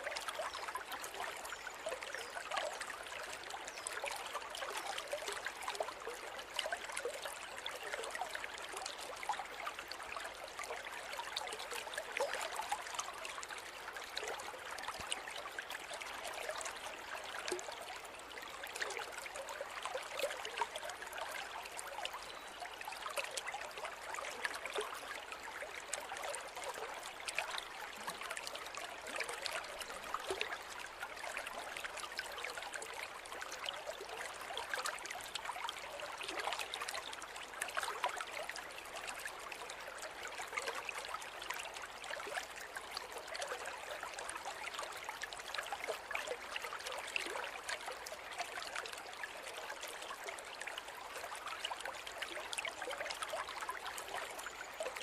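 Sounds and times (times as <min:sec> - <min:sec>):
river water flowing over stones: 0:00.0 - 0:55.0.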